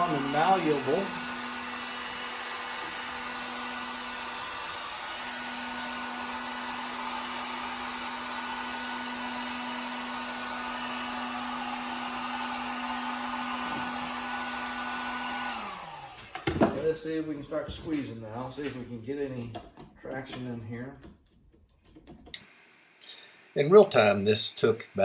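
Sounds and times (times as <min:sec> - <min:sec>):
heat gun fan hissing: 0:00.0 - 0:16.7.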